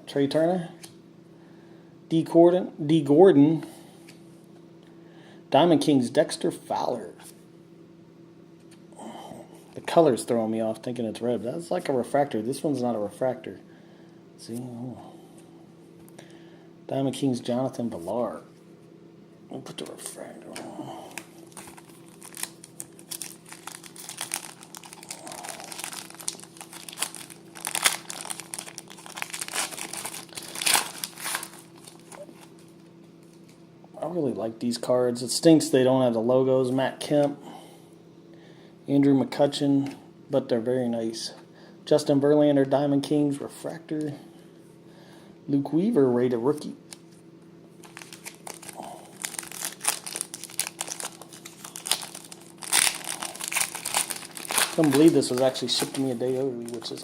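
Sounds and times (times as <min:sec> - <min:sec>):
cards and wrappers crinkling: 0:20.5 - 0:33.5, 0:47.8 - 0:57.0.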